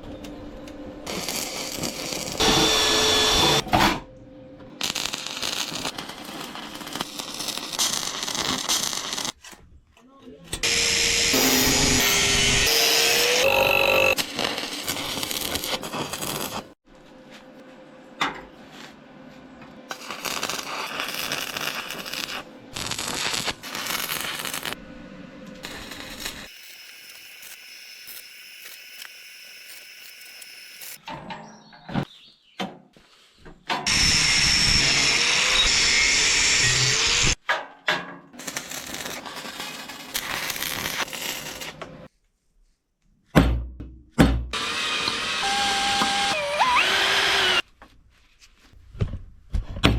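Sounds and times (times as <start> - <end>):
angle grinder on steel: 1.1 - 3.6, 10.6 - 16.4, 33.9 - 37.4, 44.6 - 47.6
workshop sounds: 8.8 - 20.5.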